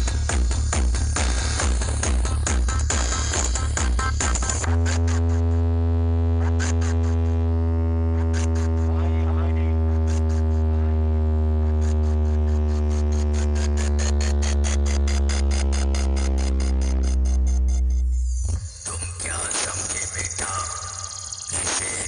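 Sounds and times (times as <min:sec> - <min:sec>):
deep bass tone: 0:00.0 - 0:22.0
sustained synth chord: 0:04.6 - 0:18.8.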